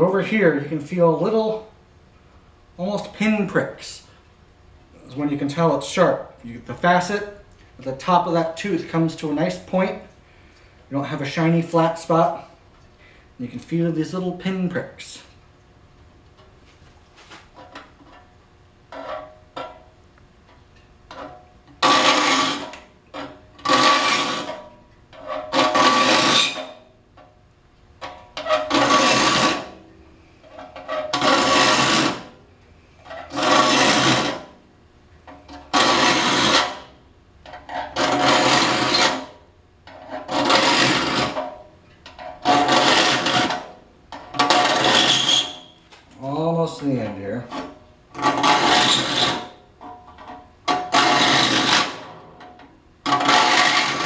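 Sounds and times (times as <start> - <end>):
file stroking saw teeth: 21.8 - 22.8, 23.6 - 24.5, 25.6 - 26.7, 28.6 - 29.8, 31.1 - 32.3, 33.2 - 34.5, 35.8 - 36.8, 40.3 - 41.4, 42.5 - 43.6, 44.4 - 45.7, 48.2 - 49.6, 50.8 - 52.0, 53.1 - 54.0.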